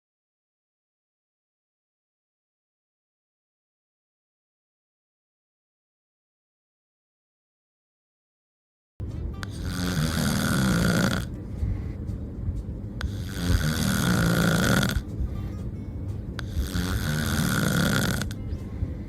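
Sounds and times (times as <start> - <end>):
loud snoring: 9.4 - 11.4, 13.0 - 15.1, 16.4 - 18.5.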